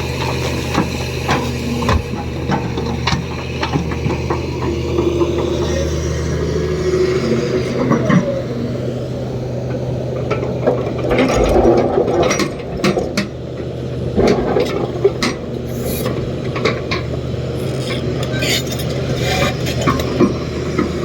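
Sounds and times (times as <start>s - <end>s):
excavator diesel engine: 0.0s - 21.0s
clanks knocks and rattling: 0.1s - 5.8s, 9.6s - 21.0s.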